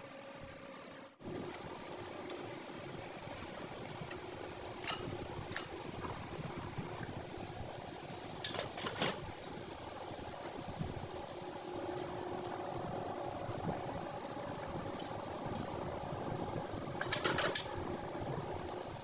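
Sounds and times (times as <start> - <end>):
low workshop hum: 0.0 - 19.0.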